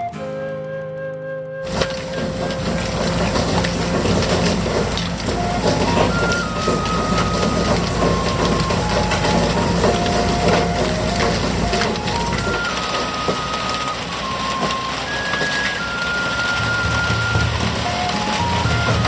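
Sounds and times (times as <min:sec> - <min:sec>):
simple held-note melody: 0:00.0 - 0:19.0
clatter of hard knocks and crunching: 0:01.7 - 0:15.7
low machine rumble: 0:01.7 - 0:19.0.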